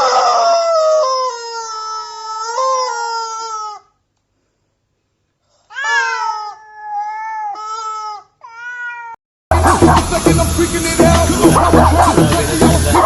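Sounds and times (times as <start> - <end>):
cat yowling: 5.7 - 9.2.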